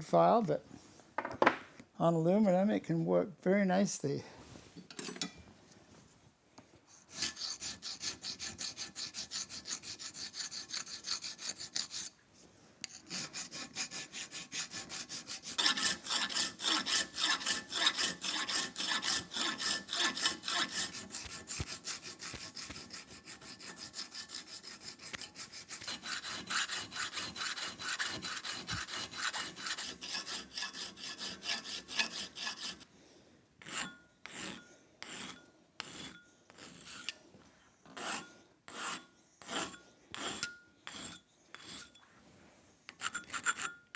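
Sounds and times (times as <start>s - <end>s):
file rasping on metal: 7.0s - 12.2s, 12.8s - 32.9s, 33.6s - 37.2s, 37.9s - 42.0s, 42.9s - 43.9s.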